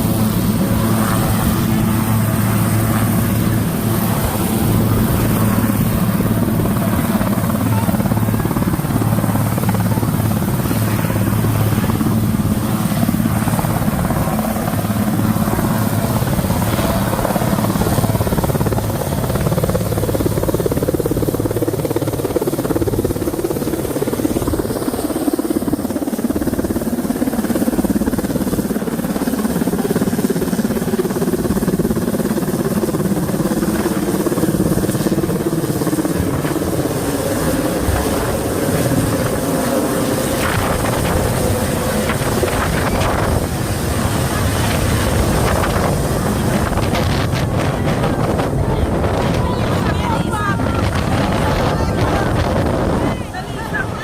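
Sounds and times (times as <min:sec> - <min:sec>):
engine running loudly: 0:40.4 - 0:54.0.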